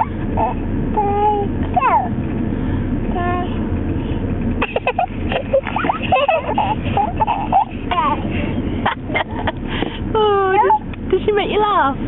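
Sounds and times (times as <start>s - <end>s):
car road noise rumble: 0.0s - 12.0s
baby laughing: 4.6s - 9.6s.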